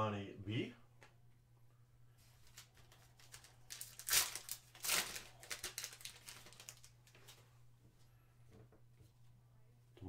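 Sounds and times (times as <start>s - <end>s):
foil wrapper crinkling: 2.4s - 7.4s
foil wrapper ripping: 2.5s - 7.2s.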